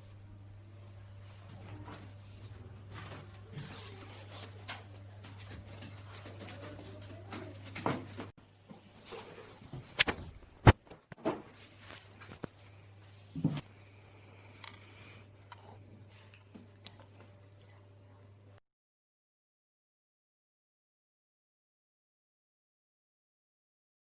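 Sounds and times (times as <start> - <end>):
low steady hum: 0.0 - 18.6.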